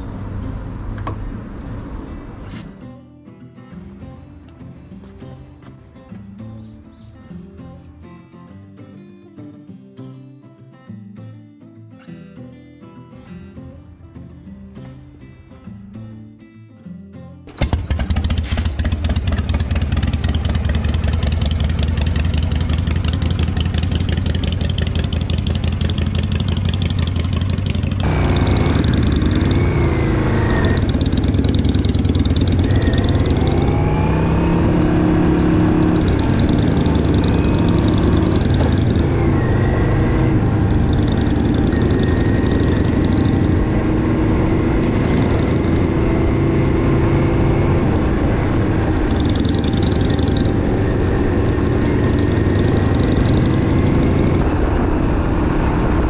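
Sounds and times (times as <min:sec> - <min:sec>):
motorcycle engine revving: 0:00.0 - 0:02.8, 0:17.5 - 0:56.0.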